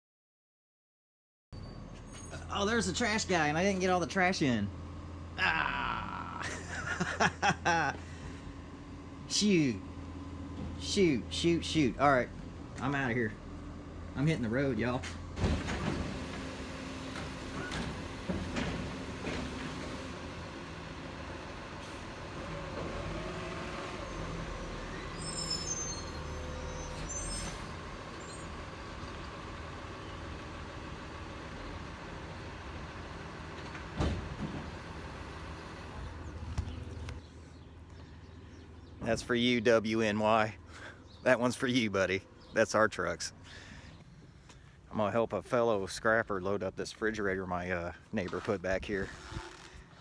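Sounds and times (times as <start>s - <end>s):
vehicle engine rumble: 1.7s - 50.0s
road noise: 2.0s - 5.4s, 6.7s - 50.0s
knocks and clunks: 15.4s - 23.4s, 31.9s - 37.2s.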